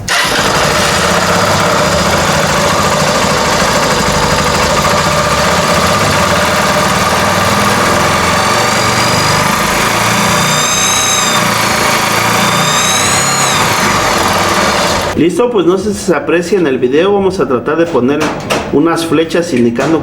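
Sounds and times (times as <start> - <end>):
internal rotating scraping noise: 0.1 - 15.2
motorcycle engine idling: 0.1 - 15.2.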